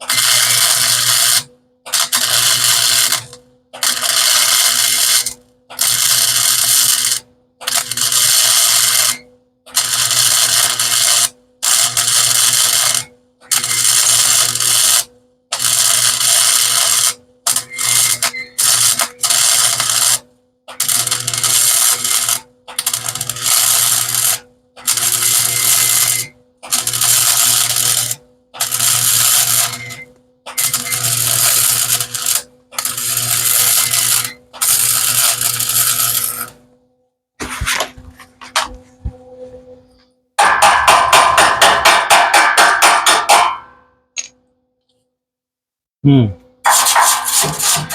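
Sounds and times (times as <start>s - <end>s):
welder humming: 0.0s - 9.2s, 9.8s - 20.2s, 20.8s - 36.7s
welding arc crackling: 0.1s - 9.2s, 9.8s - 36.6s, 46.6s - 47.9s.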